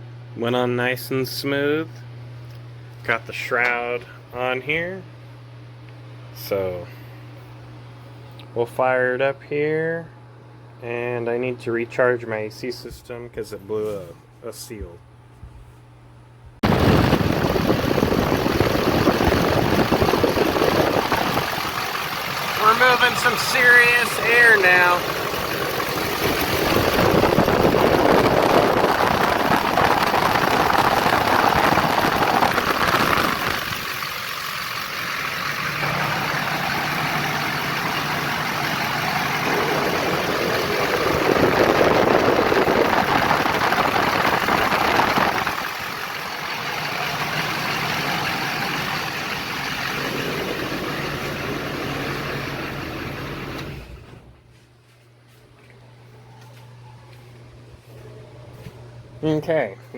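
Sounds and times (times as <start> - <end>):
diesel engine running: 16.6 - 54.5
engine fan rushing air: 16.6 - 54.5.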